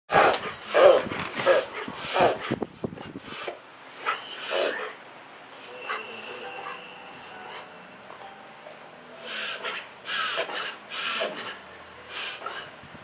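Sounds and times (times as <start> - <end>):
dog reverse sneezing: 0.1 - 5.0, 9.2 - 12.7.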